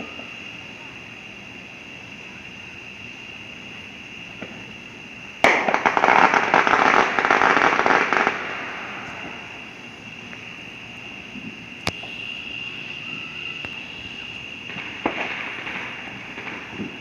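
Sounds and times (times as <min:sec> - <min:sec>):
fireworks crackling: 0:05.4 - 0:17.0.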